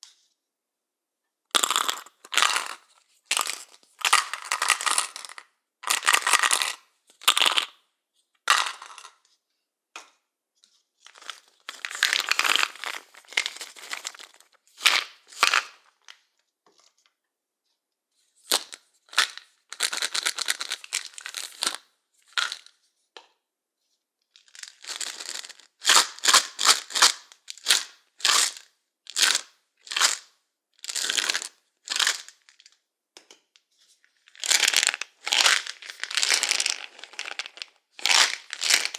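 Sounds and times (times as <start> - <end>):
pills rattling in plastic bottles: 1.6 - 7.8, 8.5 - 9.2, 11.0 - 16.2, 18.5 - 22.7, 24.4 - 32.8, 34.2 - 38.9.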